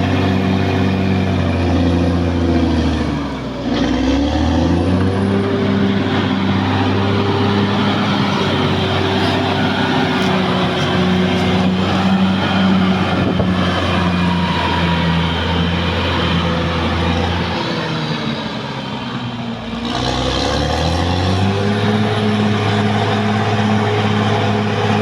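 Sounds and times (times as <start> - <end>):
bulldozer diesel engine running: 0.0 - 25.0.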